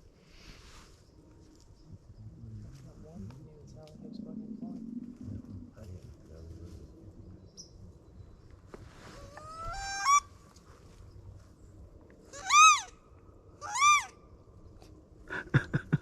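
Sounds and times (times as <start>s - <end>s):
reed duck call squealing: 12.3s - 12.9s, 13.6s - 14.1s.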